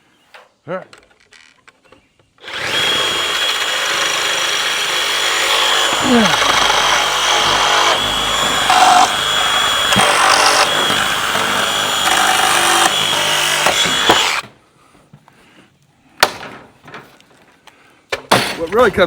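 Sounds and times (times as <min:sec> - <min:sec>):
handheld power tool running: 0:02.4 - 0:14.4.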